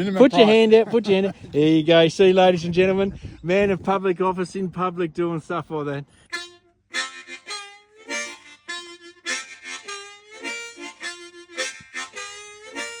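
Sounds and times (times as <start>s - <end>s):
harmonica chords and notes: 6.3s - 13.0s.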